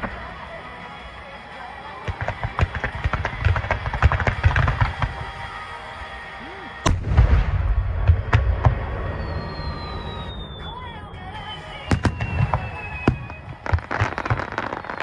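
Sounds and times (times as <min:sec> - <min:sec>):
fireworks crackling bangs: 0:00.0 - 0:06.2, 0:06.8 - 0:15.0
music: 0:00.0 - 0:15.0
heavy firework boom: 0:06.9 - 0:10.6, 0:11.9 - 0:14.6.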